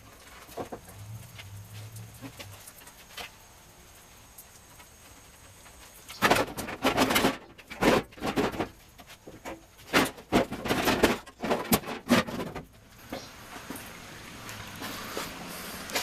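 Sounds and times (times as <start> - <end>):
car fender scraping and knocking: 6.1 - 14.0.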